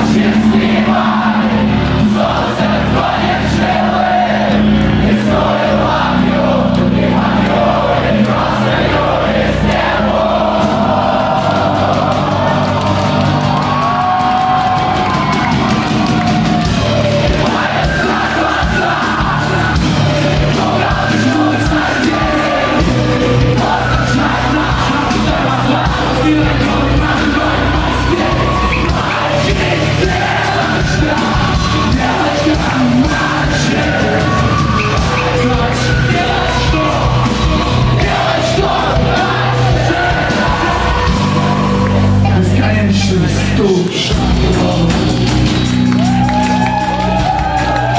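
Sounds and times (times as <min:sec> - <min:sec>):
audience noise: 0:00.0 - 0:47.9
live rock band playing: 0:00.0 - 0:47.9
person singing: 0:16.5 - 0:47.9.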